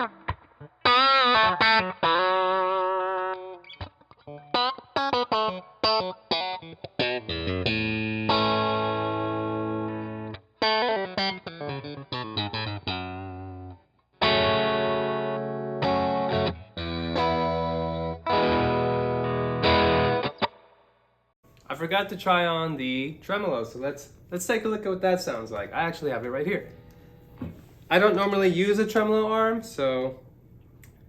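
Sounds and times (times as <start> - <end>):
overdriven electric guitar: 0.0 - 20.8, 26.6 - 27.7.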